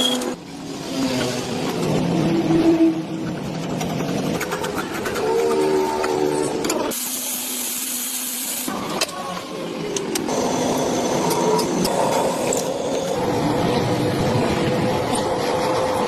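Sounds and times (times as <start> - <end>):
workshop machinery running: 3.3 - 16.0.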